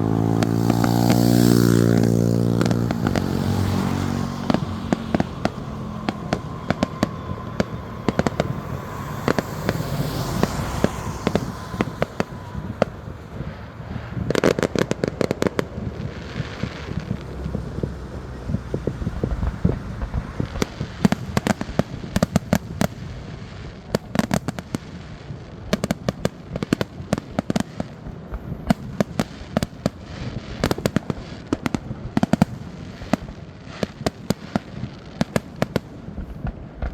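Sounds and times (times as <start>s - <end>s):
vehicle engine running: 0.0s - 21.7s
fireworks crackling and banging: 0.0s - 36.9s.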